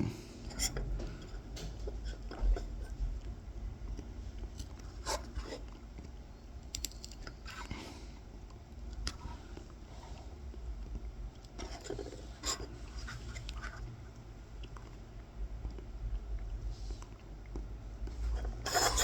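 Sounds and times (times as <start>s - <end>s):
knife scratching wood: 18.5s - 19.0s.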